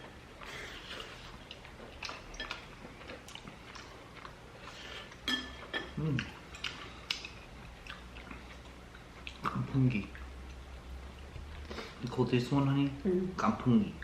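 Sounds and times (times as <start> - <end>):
crunchy chewing: 0.4 - 5.2
utensils clinking on dishes: 5.2 - 6.0.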